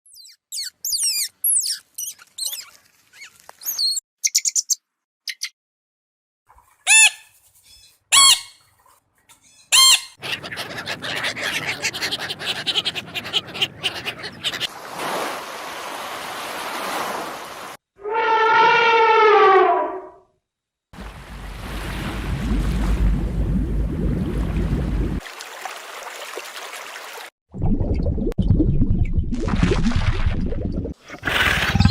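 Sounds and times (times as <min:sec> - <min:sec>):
shrill animal calls: 0:06.9 - 0:08.6, 0:09.5 - 0:14.7
birds chirping: 0:06.9 - 0:14.7
long wavering animal call: 0:18.0 - 0:20.1.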